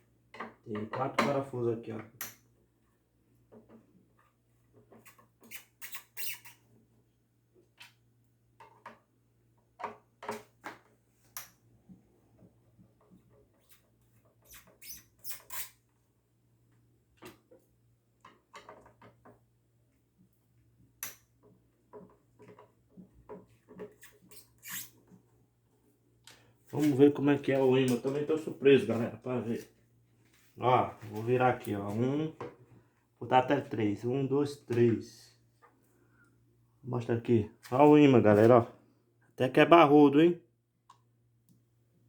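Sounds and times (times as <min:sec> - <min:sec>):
screws squeaking and clicking: 0:05.0 - 0:06.7, 0:14.4 - 0:15.8, 0:23.9 - 0:25.0.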